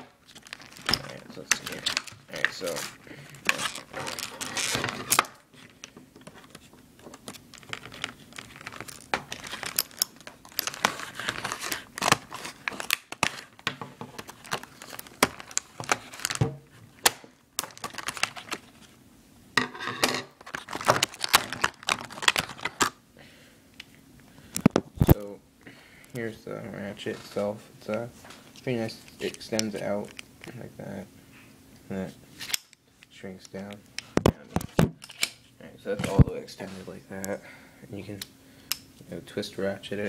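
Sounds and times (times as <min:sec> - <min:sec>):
packaging crinkling and tearing: 0:00.2 - 0:19.0, 0:20.4 - 0:23.0.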